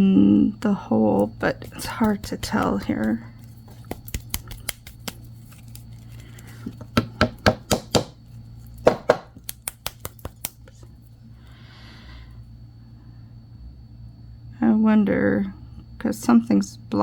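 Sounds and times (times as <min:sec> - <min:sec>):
hard objects clicking on work surface: 0:06.8 - 0:08.2, 0:08.8 - 0:10.6.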